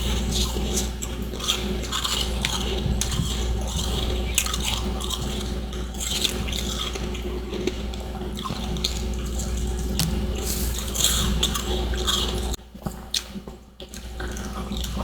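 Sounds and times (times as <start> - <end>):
mouth chewing frost crunching: 0.0 - 15.0
steady low hum: 7.5 - 12.6.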